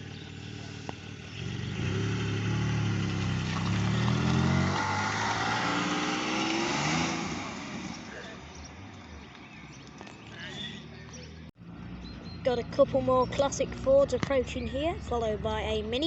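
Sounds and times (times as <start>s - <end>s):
car engine accelerating: 0.0s - 12.4s.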